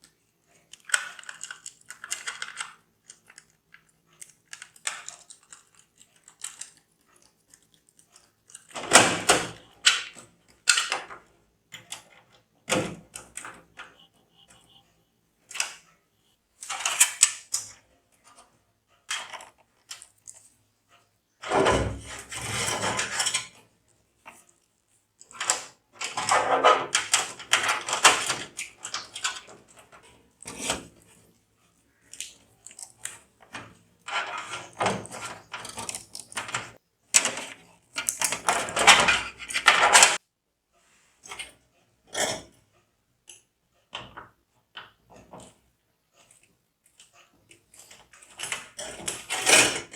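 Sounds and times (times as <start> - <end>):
clicks and clatter of computer parts: 0.0 - 14.8, 16.6 - 31.2, 32.0 - 40.2, 46.2 - 49.9.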